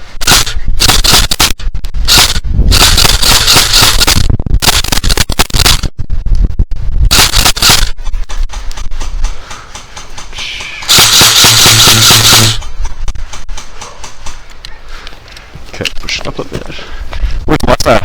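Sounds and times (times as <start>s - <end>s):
airsoft gun firing: 0.2s - 5.8s, 7.1s - 7.9s, 10.8s - 12.6s.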